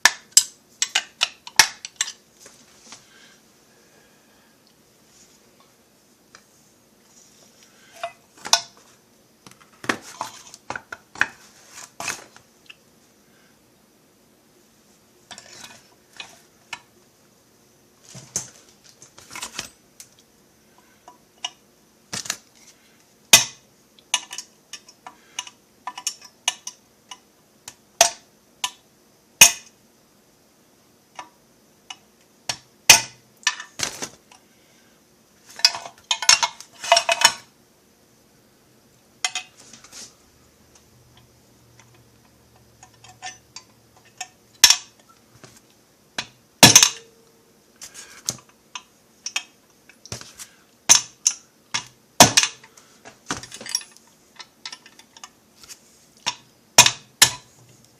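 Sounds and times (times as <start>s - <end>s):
metal tools clinking on workbench: 53.3s - 55.4s.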